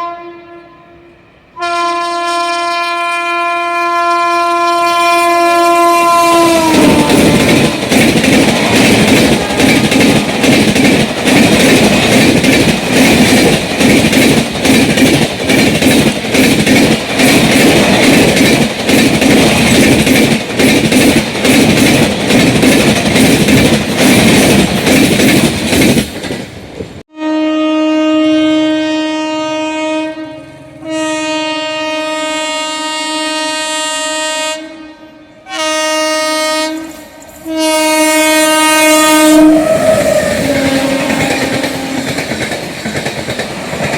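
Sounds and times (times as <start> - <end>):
locomotive horn blasts: 0.0 - 7.6, 27.1 - 42.1
train wheels clicking over rail joints: 6.3 - 27.0, 39.6 - 43.9.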